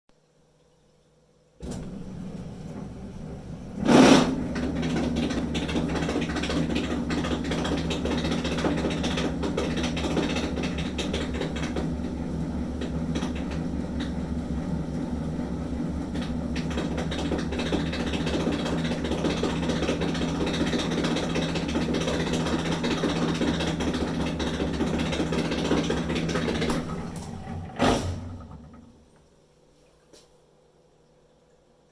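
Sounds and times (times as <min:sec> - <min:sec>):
dryer motor hum: 0:01.6 - 0:30.3
dryer rattling: 0:03.7 - 0:28.9.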